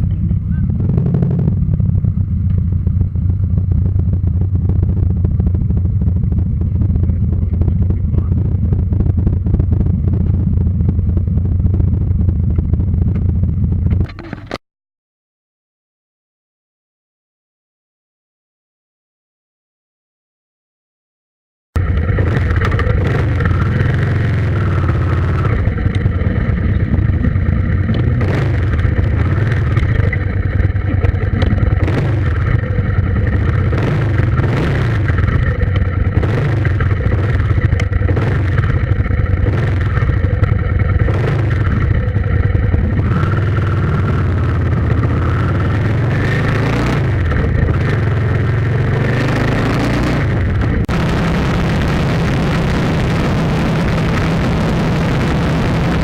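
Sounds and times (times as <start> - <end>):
vehicle engine rumbling: 0.0 - 14.6, 21.8 - 56.0.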